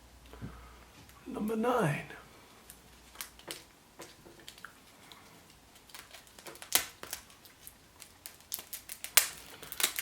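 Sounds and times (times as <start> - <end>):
wrapper crinkling and clicks: 2.7 - 10.0.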